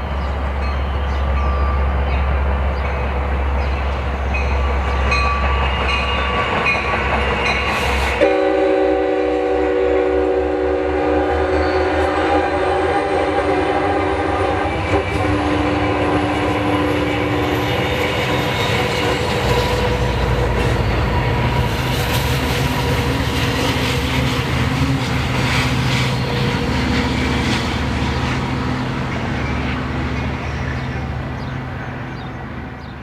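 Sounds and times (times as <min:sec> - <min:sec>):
wheels clacking over rail joints: 0:00.0 - 0:08.2
diesel locomotive rumble: 0:00.0 - 0:33.0
locomotive horn chord: 0:08.1 - 0:17.9.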